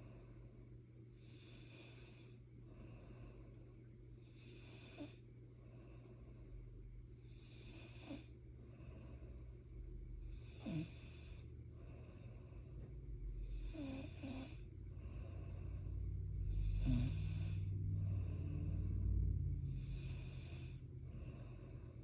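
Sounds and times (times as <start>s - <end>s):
person snoring: 4.4s - 5.2s, 7.3s - 9.5s, 10.3s - 12.7s, 13.3s - 22.0s
steady low rumble: 5.2s - 7.6s, 8.3s - 22.0s.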